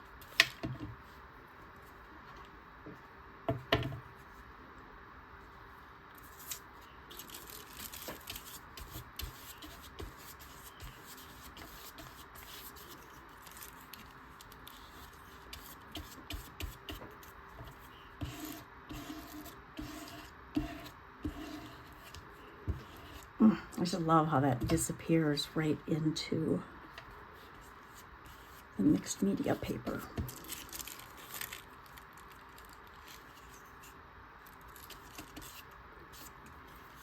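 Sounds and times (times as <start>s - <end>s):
paper rustling and rubbing: 6.2s - 23.3s, 27.4s - 37.0s.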